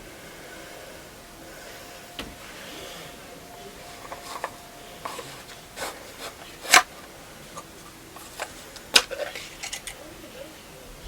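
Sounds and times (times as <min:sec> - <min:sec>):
plastic container clicks and crinkles: 0:04.0 - 0:10.0.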